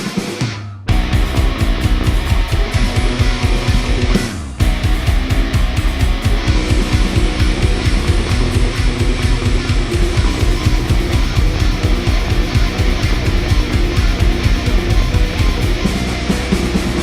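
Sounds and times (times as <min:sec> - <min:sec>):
fast driving drum beat: 0:00.0 - 0:17.0
heavy electric guitars: 0:00.0 - 0:17.0.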